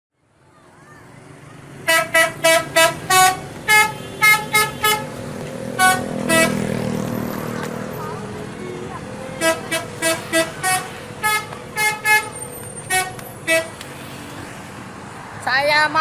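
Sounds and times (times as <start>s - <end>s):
vehicle engine and road rumble: 0.2s - 16.0s
multi-tone musical horn toots: 1.8s - 6.9s, 9.4s - 13.8s.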